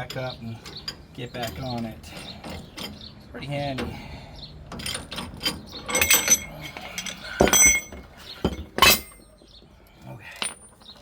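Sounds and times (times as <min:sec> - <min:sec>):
ringing metal clinks: 0:04.8 - 0:08.0.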